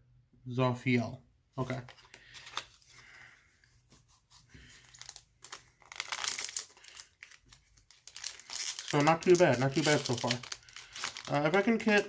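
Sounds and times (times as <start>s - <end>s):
foil wrapper crinkling: 4.6s - 12.0s.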